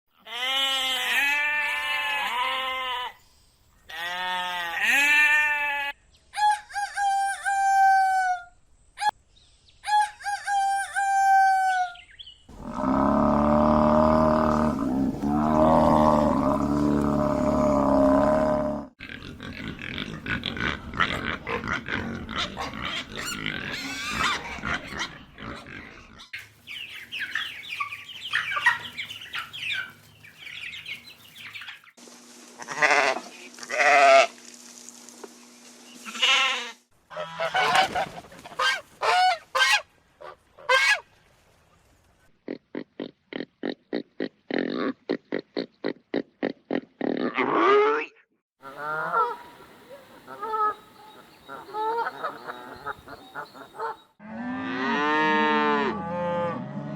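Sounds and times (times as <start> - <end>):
goats bleating: 0.3 - 3.1, 3.9 - 5.9, 32.6 - 34.3
geese honking: 26.8 - 31.8, 36.1 - 41.0, 48.6 - 54.1.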